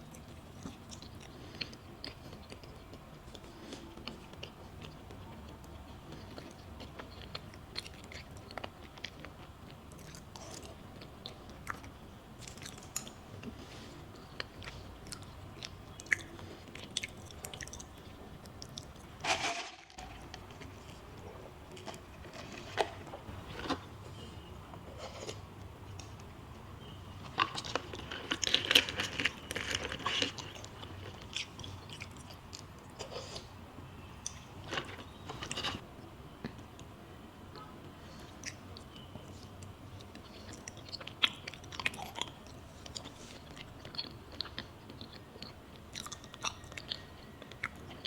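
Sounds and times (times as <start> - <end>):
chewing and biting: 0.1 - 19.1, 27.2 - 33.5, 39.4 - 48.0.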